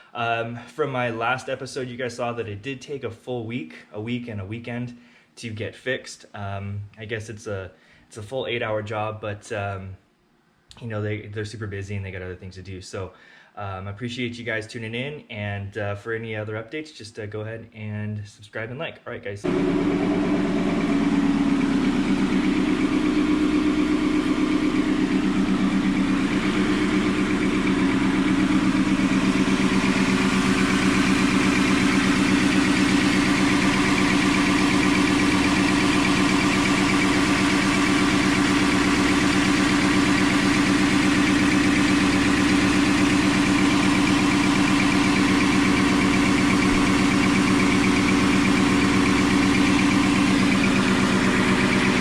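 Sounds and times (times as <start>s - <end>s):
car engine idling: 19.4s - 52.0s.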